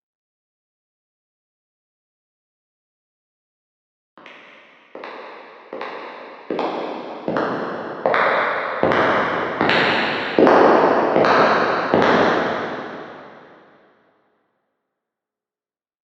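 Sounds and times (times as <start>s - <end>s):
echoing footsteps: 4.2s - 13.6s.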